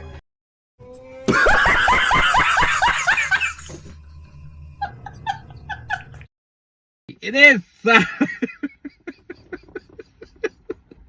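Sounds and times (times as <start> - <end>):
person laughing hard: 1.3 - 3.7, 7.8 - 11.0.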